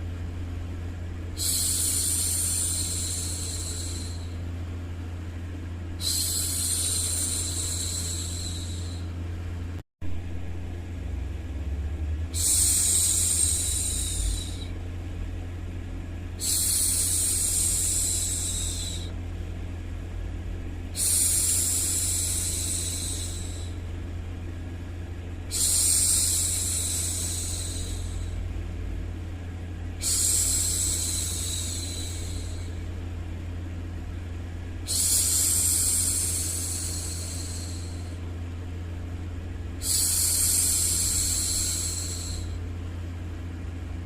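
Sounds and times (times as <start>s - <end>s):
low white-noise hum: 0.0s - 44.0s
woman shushing: 6.0s - 9.1s, 12.4s - 14.8s, 16.4s - 19.1s.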